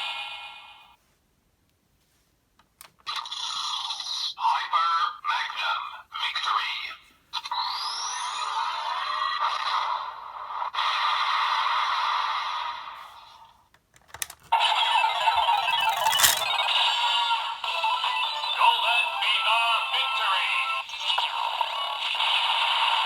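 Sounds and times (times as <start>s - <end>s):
toy mechanical click: 13.9s - 14.6s, 15.4s - 16.6s
slot-machine style jingle: 14.6s - 16.6s
toy electronic jingle: 14.6s - 18.6s.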